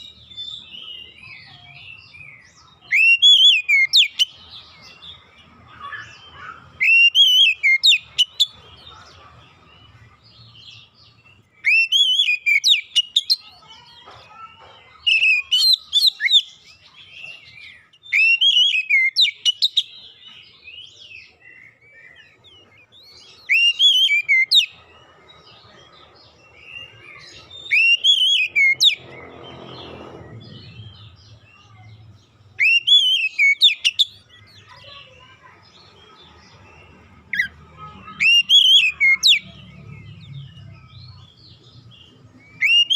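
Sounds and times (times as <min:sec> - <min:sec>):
bird singing whistled phrases: 0:02.2 - 0:04.4, 0:05.8 - 0:08.5, 0:11.6 - 0:13.4, 0:18.0 - 0:19.9, 0:23.3 - 0:24.8, 0:27.6 - 0:29.0, 0:32.5 - 0:34.3, 0:38.1 - 0:40.6, 0:42.4 - 0:42.9.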